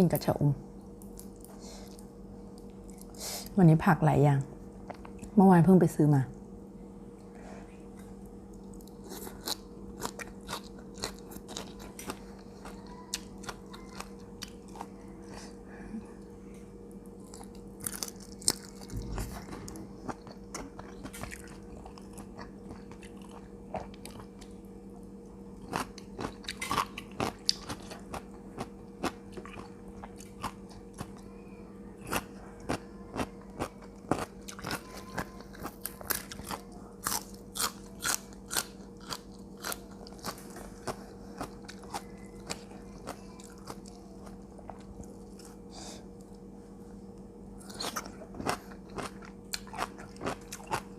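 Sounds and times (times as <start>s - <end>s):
crunchy vegetables being chewed: 7.9s - 15.6s, 17.0s - 31.4s, 32.0s - 46.5s, 47.1s - 50.9s.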